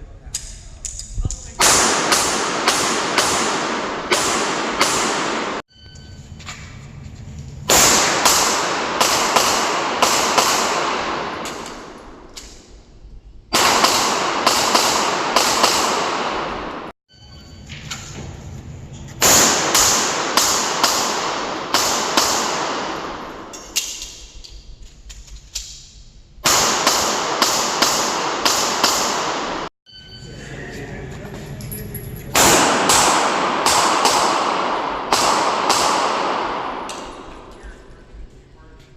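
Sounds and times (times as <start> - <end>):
handgun shots with echo: 1.6 - 5.6, 7.7 - 12.5, 13.5 - 16.9, 19.2 - 24.2, 26.4 - 29.7, 32.3 - 37.6.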